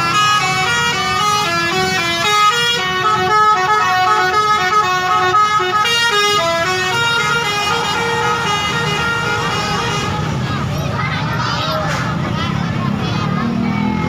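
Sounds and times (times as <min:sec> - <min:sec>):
bus horn playing a tune: 0:00.0 - 0:10.5.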